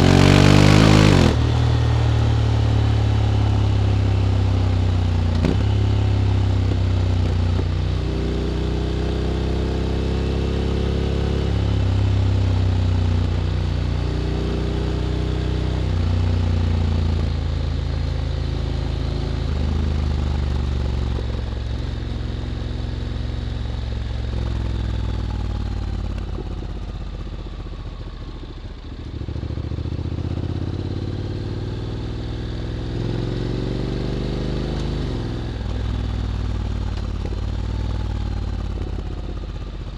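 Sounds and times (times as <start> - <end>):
motorcycle engine accelerating: 0.0 - 39.9.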